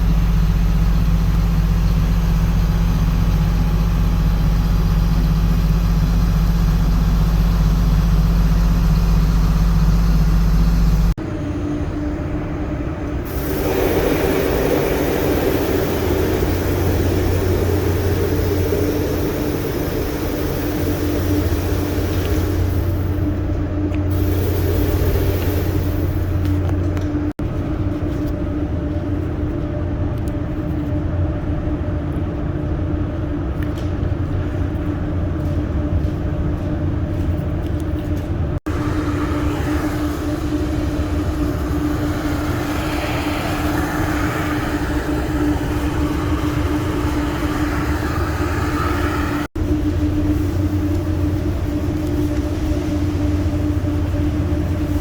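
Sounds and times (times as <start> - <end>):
hot water jetter humming: 13.2 - 27.4, 38.7 - 55.0.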